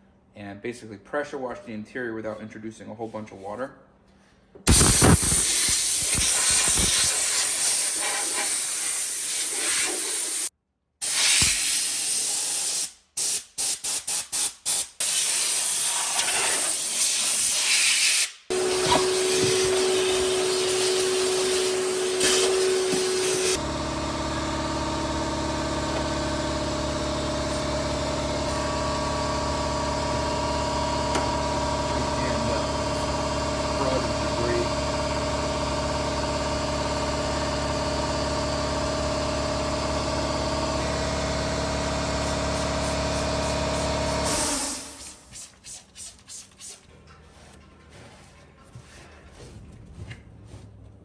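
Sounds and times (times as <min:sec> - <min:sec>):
low motor hum: 0:23.6 - 0:44.3.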